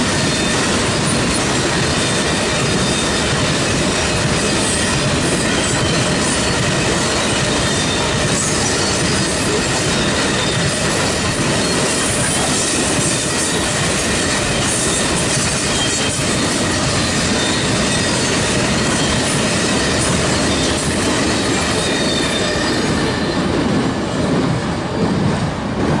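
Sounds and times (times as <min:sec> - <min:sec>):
train wheels rumbling on rails: 0:00.0 - 0:26.0.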